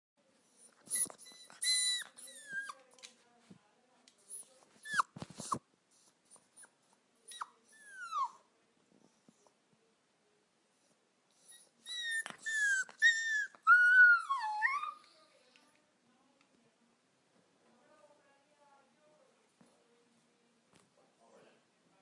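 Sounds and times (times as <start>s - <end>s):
puppy whining: 0.5s - 2.9s, 4.3s - 8.4s, 11.4s - 15.2s.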